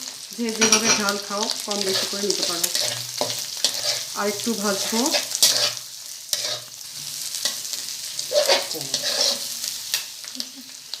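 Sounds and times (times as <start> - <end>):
egg sizzling in hot oil: 0.0 - 11.0
utensil scraping against pan: 0.6 - 1.1, 1.9 - 9.7.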